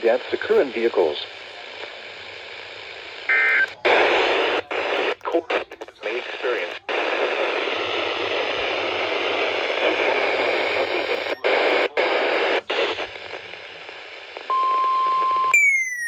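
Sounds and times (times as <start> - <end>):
radio static hiss: 0.0 - 15.5
falling electronic whistle: 15.5 - 16.0.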